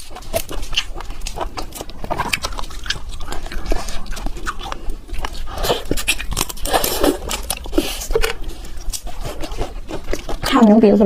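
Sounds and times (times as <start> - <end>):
chewing and lip smacking: 0.0 - 11.0.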